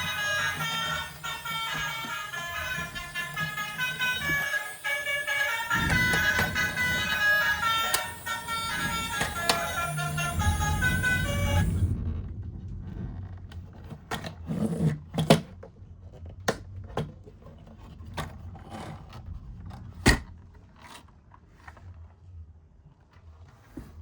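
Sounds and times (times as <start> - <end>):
low steady rumble: 0.0 - 14.6.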